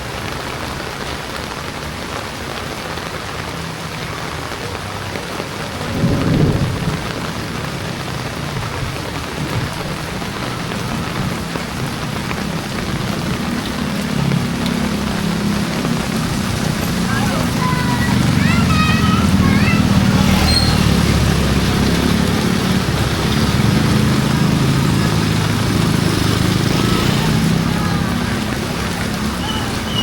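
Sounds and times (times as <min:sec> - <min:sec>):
heavy rain pouring: 0:00.0 - 0:30.0
low rumble: 0:05.7 - 0:25.9.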